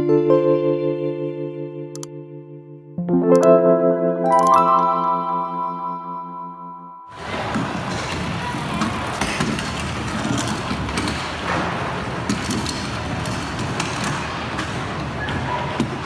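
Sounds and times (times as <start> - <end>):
skateboards clacking on surfaces: 7.2 - 16.0
wheels rolling on ramps: 7.2 - 16.0.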